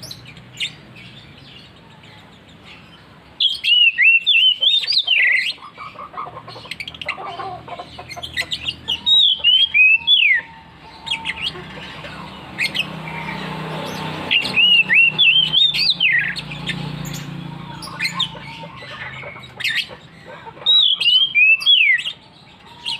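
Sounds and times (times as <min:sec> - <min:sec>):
bird singing whistled phrases: 0:03.4 - 0:05.5, 0:09.0 - 0:11.5, 0:14.3 - 0:16.7, 0:20.7 - 0:22.2.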